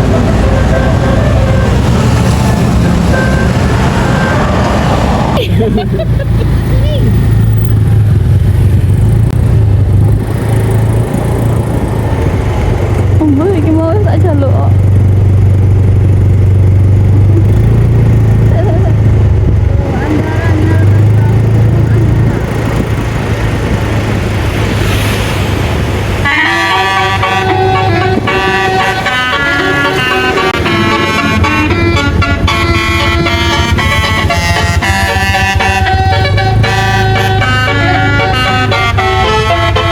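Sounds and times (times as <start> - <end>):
musical bus horn: 0.0 - 5.4, 26.2 - 39.9
road noise: 0.0 - 39.9
traffic noise: 0.0 - 39.9
vehicle engine droning: 0.0 - 39.9.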